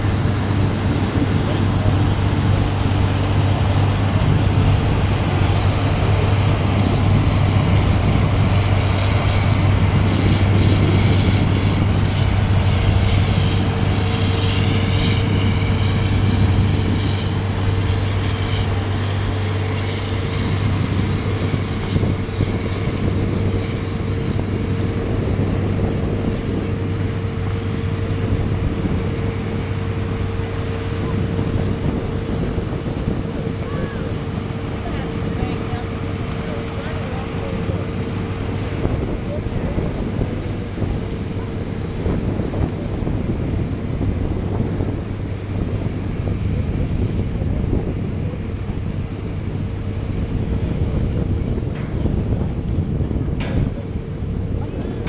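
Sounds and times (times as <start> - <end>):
motorboat engine droning: 0.0 - 55.0.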